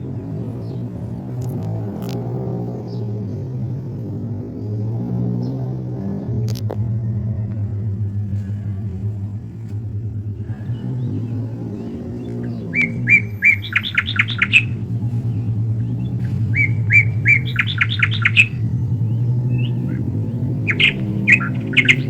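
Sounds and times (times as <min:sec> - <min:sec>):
songbird singing: 0:00.0 - 0:06.5, 0:10.0 - 0:22.0
steady low rumble: 0:06.7 - 0:22.0.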